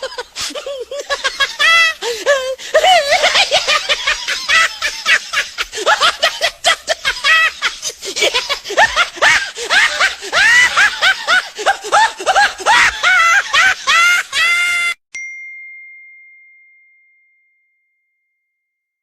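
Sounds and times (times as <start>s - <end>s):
high-pitched giggling: 0.0s - 14.6s.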